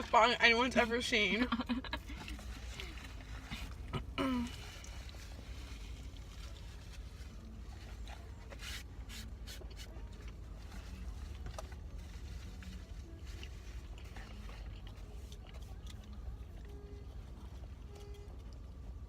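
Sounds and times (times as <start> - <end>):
car interior hum: 0.0 - 19.0.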